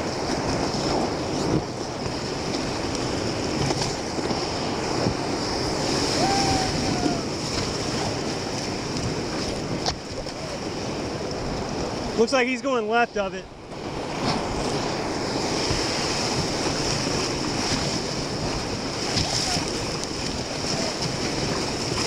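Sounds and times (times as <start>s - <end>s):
wind buffeting microphone: 0.0s - 12.6s, 13.4s - 22.0s
whitewater rushing: 0.0s - 22.0s.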